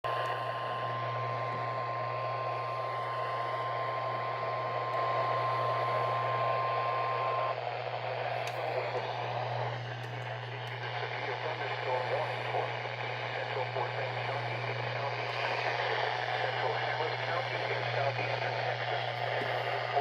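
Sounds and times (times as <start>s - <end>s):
radio hiss: 0.1s - 20.0s
steady warning alarm tone: 2.7s - 7.6s.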